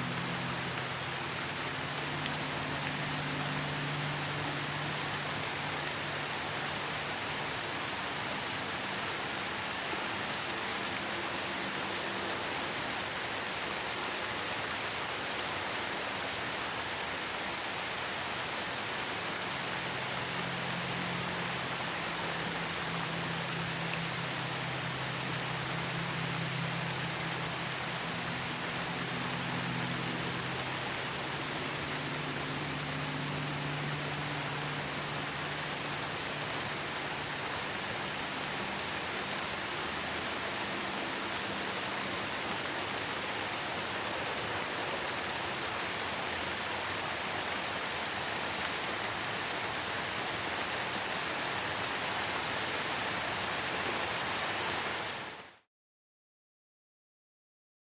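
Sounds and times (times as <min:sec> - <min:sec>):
low ambient drone: 0:00.0 - 0:08.6, 0:19.2 - 0:45.6
rain hiss: 0:00.0 - 0:55.6.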